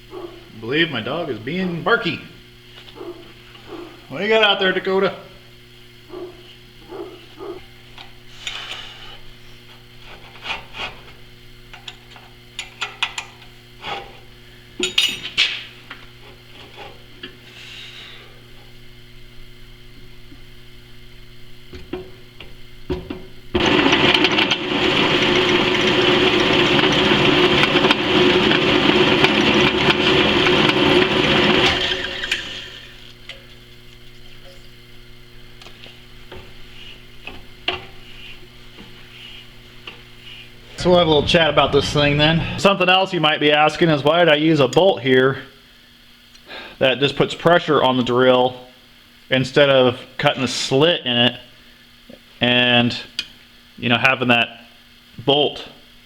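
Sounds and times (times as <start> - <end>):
power tool running: 23.5 - 33.2.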